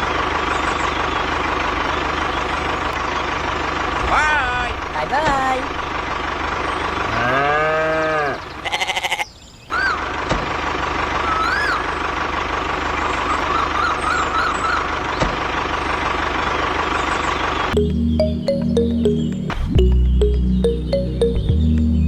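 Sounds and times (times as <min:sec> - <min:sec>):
farm animal bleating: 0:07.0 - 0:09.4.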